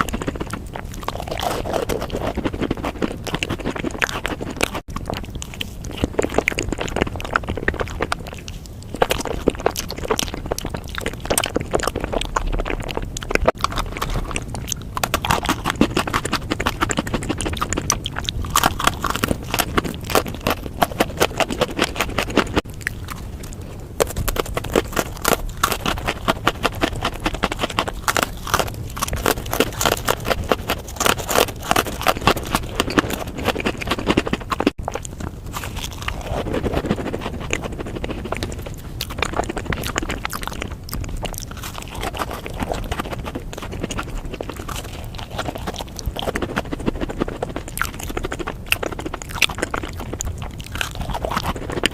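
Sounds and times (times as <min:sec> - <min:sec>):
chewing crunches and mouth clicks: 0:00.0 - 0:51.9.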